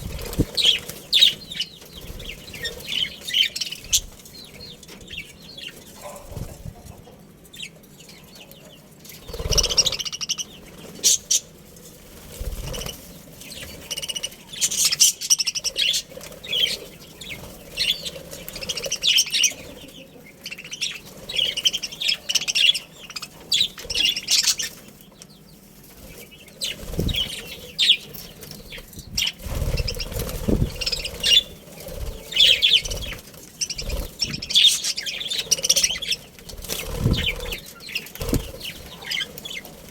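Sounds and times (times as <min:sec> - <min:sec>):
wing flapping: 0:00.0 - 0:04.3, 0:09.2 - 0:10.1, 0:10.7 - 0:15.1, 0:25.9 - 0:39.9
budgerigars chirping: 0:00.0 - 0:06.2, 0:07.0 - 0:11.5, 0:12.4 - 0:39.9.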